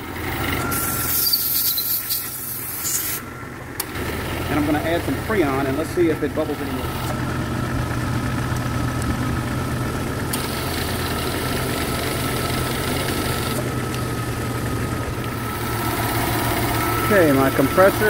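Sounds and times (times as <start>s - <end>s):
air conditioning whine: 0.0s - 18.0s
car engine idling: 0.0s - 18.0s
hiss: 0.8s - 3.2s.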